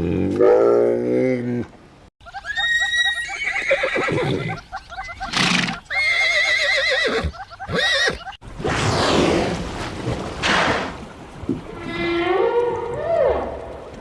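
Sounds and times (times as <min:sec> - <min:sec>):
horse whinnying: 0:02.5 - 0:04.6, 0:05.2 - 0:08.4.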